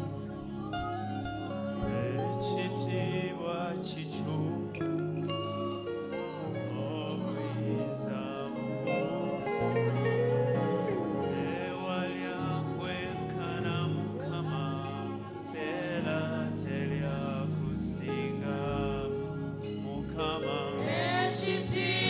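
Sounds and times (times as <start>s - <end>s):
band playing sustained chords: 0.0s - 22.0s
person singing: 0.0s - 22.0s.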